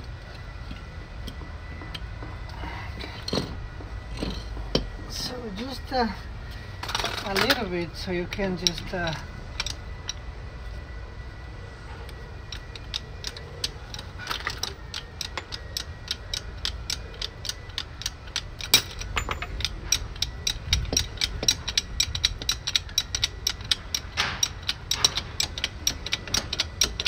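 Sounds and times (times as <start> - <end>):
ratchet wrench clicking: 8.6 - 10.2, 12.5 - 27.0.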